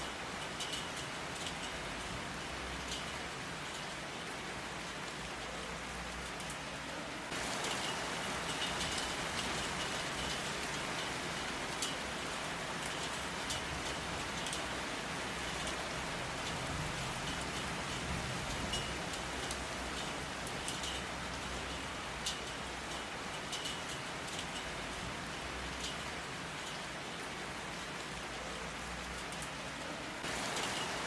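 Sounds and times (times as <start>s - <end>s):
steady rain falling: 0.0s - 31.0s.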